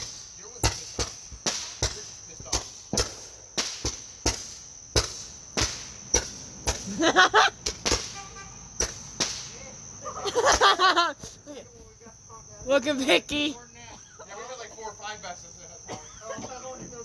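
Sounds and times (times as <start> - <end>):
firework sharp pops: 0.0 - 11.3
crickets trilling: 0.0 - 17.0.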